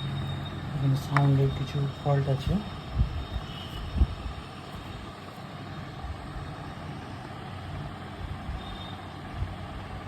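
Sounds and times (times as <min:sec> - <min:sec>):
speaker hum and hiss: 0:00.0 - 0:10.0.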